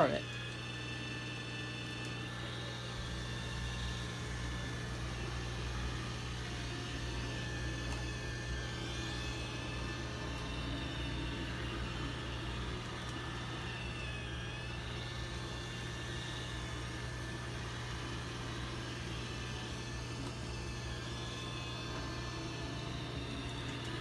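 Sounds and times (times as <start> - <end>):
robot vacuum whirring: 0.0 - 24.0.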